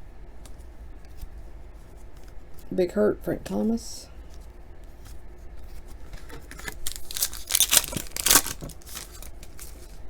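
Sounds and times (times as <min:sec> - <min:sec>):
card pack wrapper crinkling: 0:06.6 - 0:09.9.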